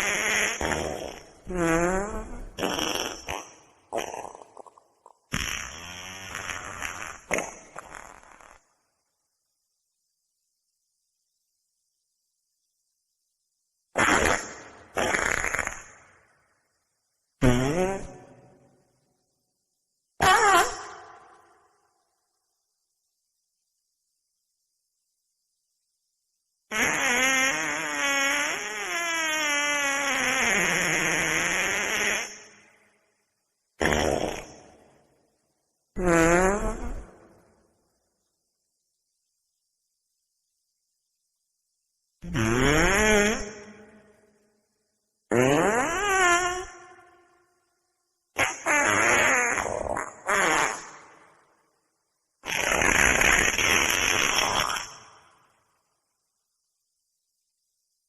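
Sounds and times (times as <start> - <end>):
farts: 0.0 - 8.8, 13.9 - 16.3, 17.4 - 18.7, 20.2 - 21.7, 26.7 - 32.7, 33.8 - 35.0, 36.0 - 37.4, 42.2 - 44.0, 45.3 - 47.3, 48.4 - 51.5, 52.4 - 55.5.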